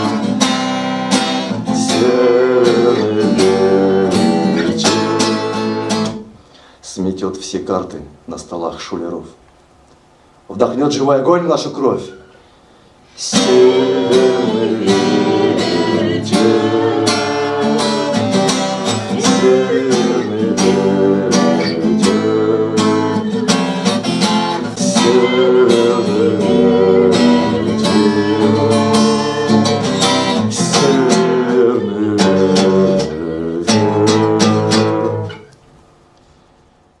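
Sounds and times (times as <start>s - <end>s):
strummed acoustic guitar: 0.0s - 6.6s, 13.2s - 35.6s.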